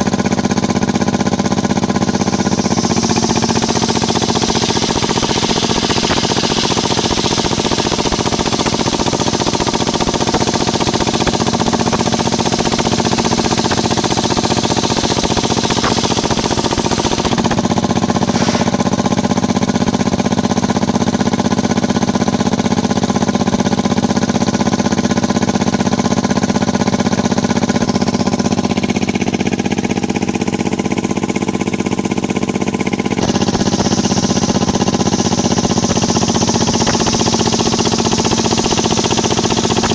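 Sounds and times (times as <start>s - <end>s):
sawmill engine running: 0.0s - 39.9s
circular saw cutting wood: 1.8s - 19.2s, 33.2s - 39.9s.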